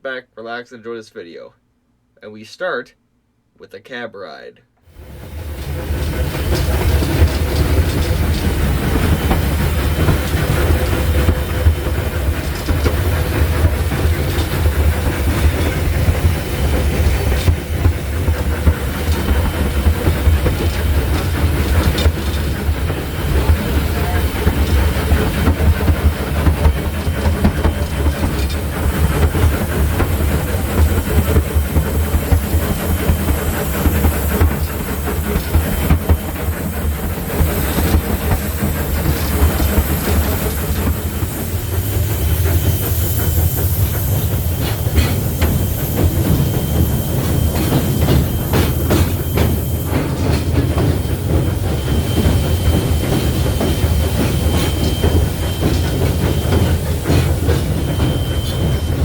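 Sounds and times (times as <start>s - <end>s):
locomotive wheels rumbling on rails: 4.9s - 59.0s
steam hissing: 4.9s - 59.0s
metal clanks and clicks: 5.6s - 36.6s, 43.8s - 59.0s.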